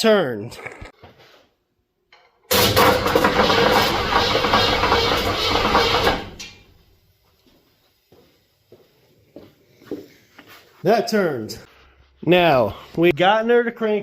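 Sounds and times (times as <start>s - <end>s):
engine cranking by starter motor: 2.5s - 6.8s.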